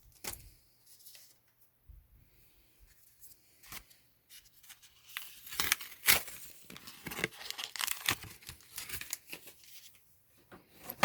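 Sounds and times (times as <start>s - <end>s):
foil pack tearing and crinkling: 5.1s - 9.4s.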